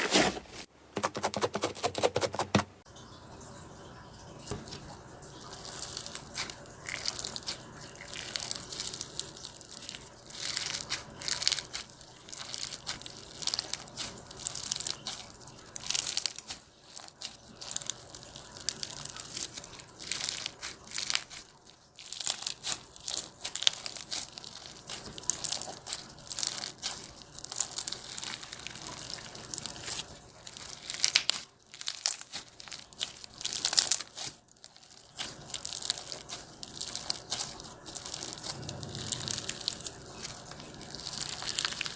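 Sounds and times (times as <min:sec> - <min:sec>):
slime crackling and crunching: 0:05.6 - 0:41.9.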